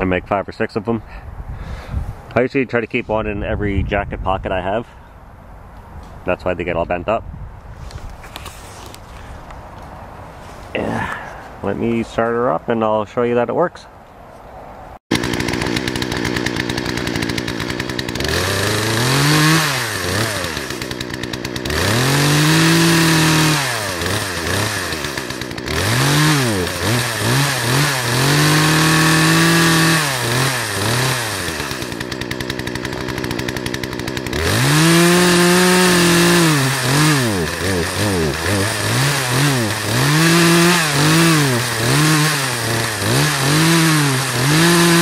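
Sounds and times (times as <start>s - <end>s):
chainsaw engine idling and revving: 15.1s - 45.0s.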